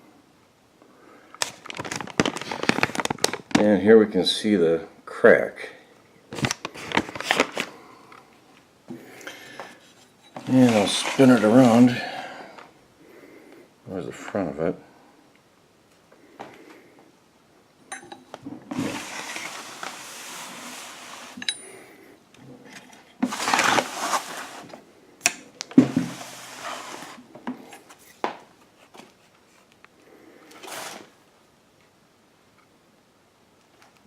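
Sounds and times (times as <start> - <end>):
metal clinks: 17.9 - 18.3, 21.4 - 21.8
sewing machine scraping: 18.7 - 21.4, 26.0 - 27.2, 30.6 - 31.1.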